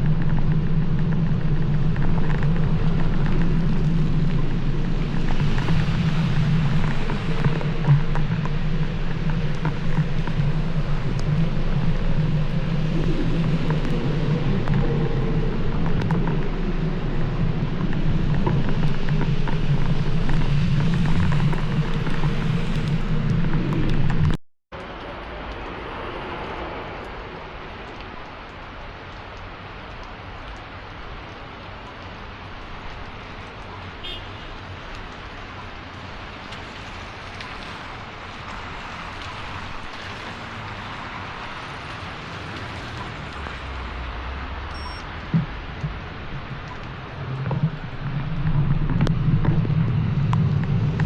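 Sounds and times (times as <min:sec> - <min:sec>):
rain hissing: 0:00.0 - 0:24.2
vehicle rumbling on the move: 0:00.0 - 0:27.9, 0:33.4 - 0:51.0
road and wind noise: 0:00.0 - 0:51.0.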